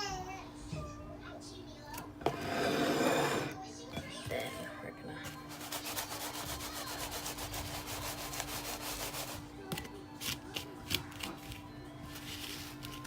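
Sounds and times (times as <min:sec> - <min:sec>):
crumbs rubbed and scraped: 0:05.3 - 0:13.0.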